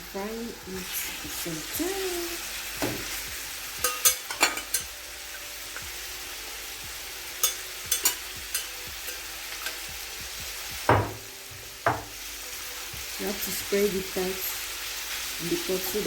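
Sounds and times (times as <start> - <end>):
meat sizzling in oil: 0.0 - 16.0
loud knock: 10.9 - 11.3, 11.9 - 12.1.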